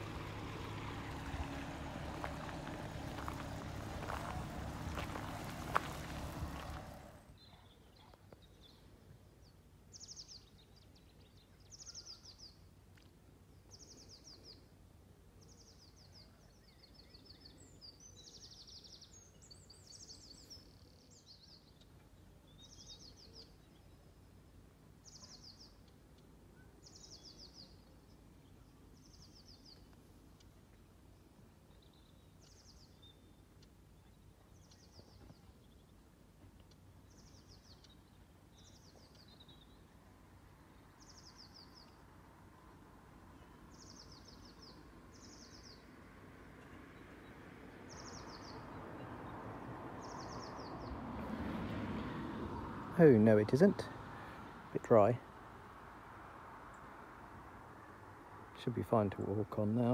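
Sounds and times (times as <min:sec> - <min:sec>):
low background rumble: 0:00.0 - 0:07.4.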